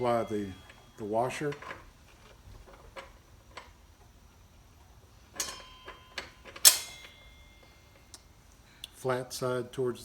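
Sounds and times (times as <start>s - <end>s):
ringing metal clink: 0.0s - 1.9s, 5.4s - 8.3s.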